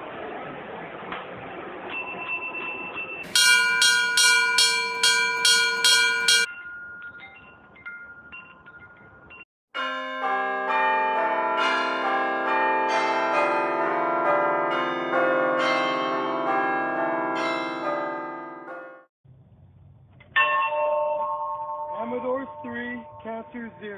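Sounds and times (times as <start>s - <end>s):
faint bell tones: 3.0s - 9.4s, 20.4s - 23.9s
church bells pealing: 3.3s - 6.5s, 9.8s - 19.0s
bell struck quickly: 3.3s - 6.6s.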